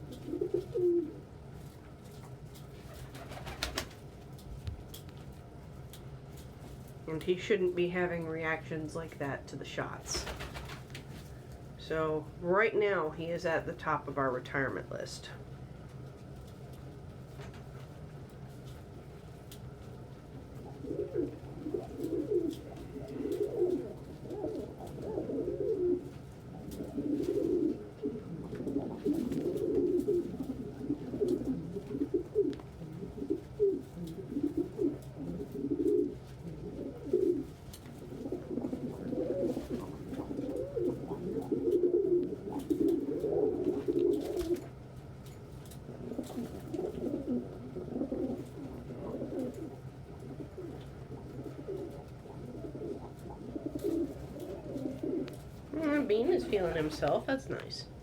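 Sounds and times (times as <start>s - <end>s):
pigeons cooing: 0.0s - 1.5s, 2.1s - 4.1s, 19.6s - 57.2s.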